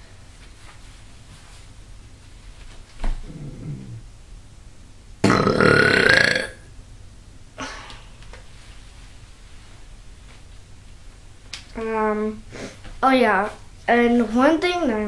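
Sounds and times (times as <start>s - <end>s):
person burping: 5.2s - 6.6s.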